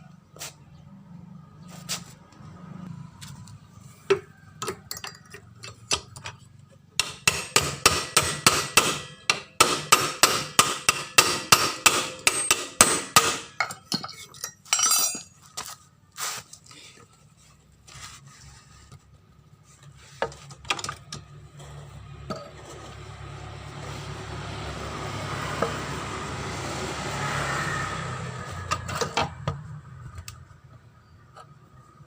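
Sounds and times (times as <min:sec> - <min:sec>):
hammer striking metal: 0:07.0 - 0:13.9
metal tool clinks: 0:13.6 - 0:15.4.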